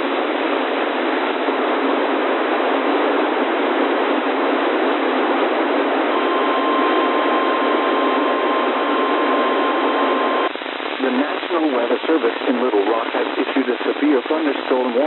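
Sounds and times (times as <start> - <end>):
radio static hiss: 0.0 - 15.0
weather radio alarm tone: 6.1 - 12.4.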